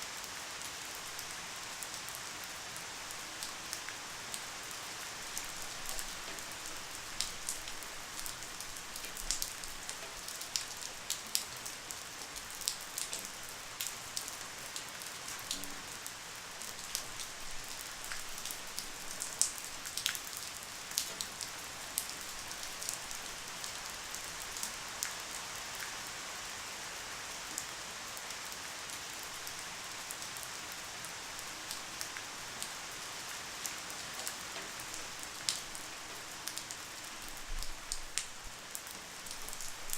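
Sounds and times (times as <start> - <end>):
light rain falling: 0.0 - 39.9.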